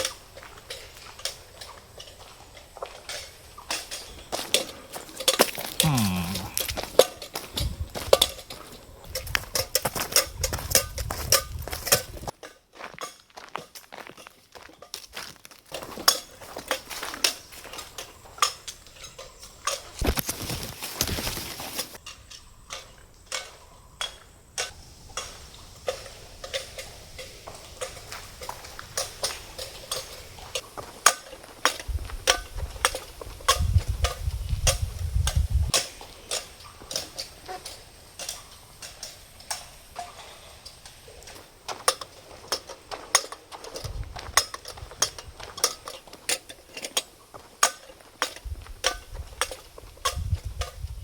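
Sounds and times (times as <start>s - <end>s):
hard objects clicking and clattering: 25.9s - 50.8s.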